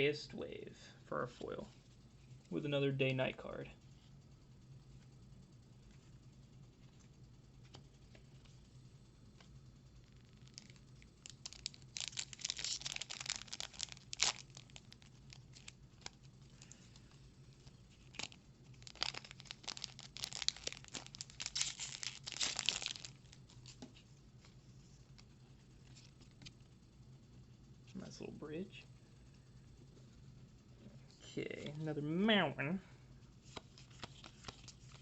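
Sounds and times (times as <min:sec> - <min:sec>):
foil wrapper tearing and crinkling: 0:10.0 - 0:16.7, 0:17.9 - 0:23.8.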